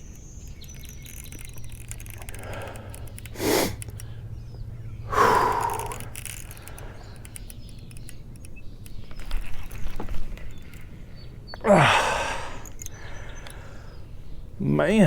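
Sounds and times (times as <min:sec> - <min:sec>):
faint bird chirps: 0:00.0 - 0:15.0
man breathing heavily: 0:02.3 - 0:04.4, 0:05.0 - 0:07.3, 0:11.6 - 0:14.3
man grunting: 0:11.6 - 0:12.5.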